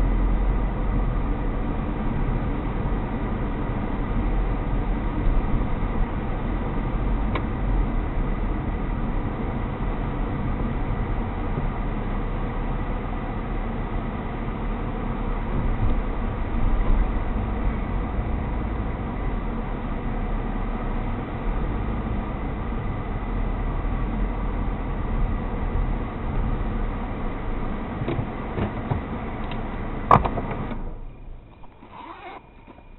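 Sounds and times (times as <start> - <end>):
car engine and road rumble: 0.0 - 32.9
faint steady tones: 30.7 - 32.9.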